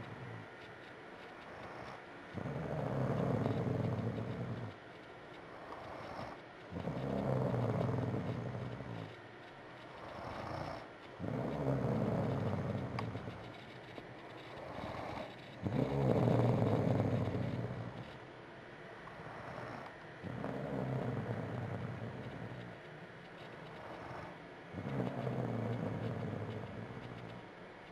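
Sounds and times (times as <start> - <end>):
quiet breaths: 0.0 - 27.9
woman snoring: 14.8 - 17.9, 19.1 - 22.6.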